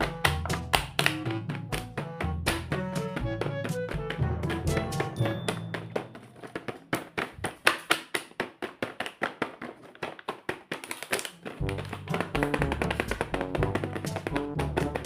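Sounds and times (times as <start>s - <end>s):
fast sharp tapping clicks: 7.2s - 15.0s.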